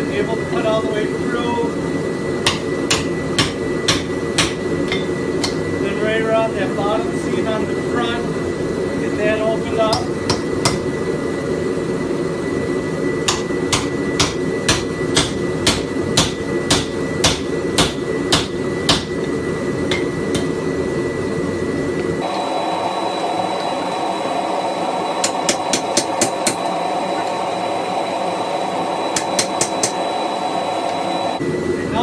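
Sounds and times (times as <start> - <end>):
hammer striking chisel on metal: 2.4 - 5.6, 9.9 - 10.9, 13.3 - 19.2, 19.9 - 20.6, 25.2 - 26.7, 29.2 - 30.0.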